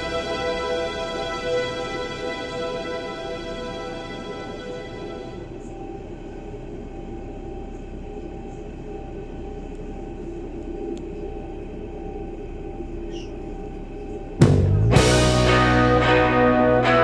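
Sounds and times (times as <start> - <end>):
loud music: 0.0 - 5.4, 14.4 - 17.0
electric train rumbling: 0.0 - 17.0
faint steady tones: 0.0 - 17.0.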